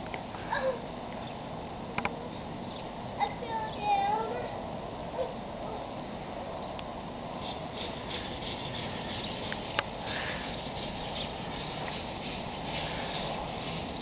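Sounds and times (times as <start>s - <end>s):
steady hiss: 5.9s - 14.0s
snow crunching and swishing: 7.5s - 14.0s.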